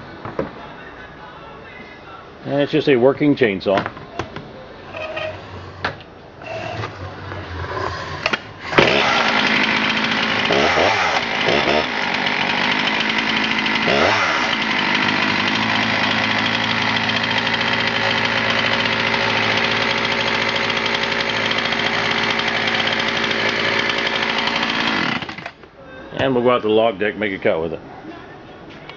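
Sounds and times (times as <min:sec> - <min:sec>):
chainsaw starting and idling: 0:08.0 - 0:25.6.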